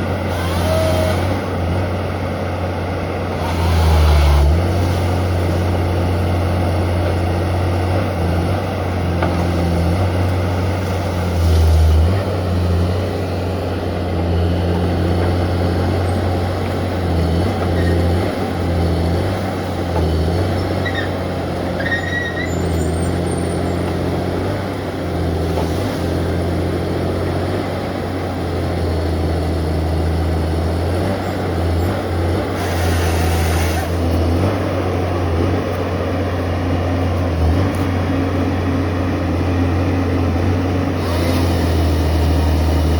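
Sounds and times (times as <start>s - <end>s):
forestry machine engine drone: 0.0s - 42.9s
brief high squeaks: 0.3s - 1.3s, 20.8s - 21.2s, 21.8s - 23.8s.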